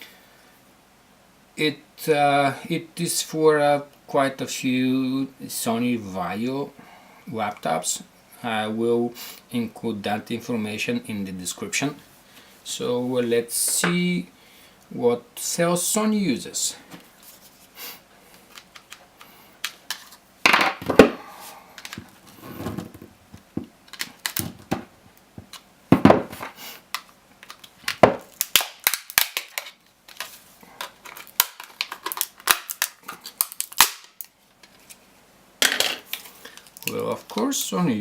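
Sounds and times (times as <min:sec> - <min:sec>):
plastic casing cracking and snapping: 0:21.8 - 0:22.1, 0:23.4 - 0:24.8, 0:26.9 - 0:34.8, 0:36.1 - 0:37.4.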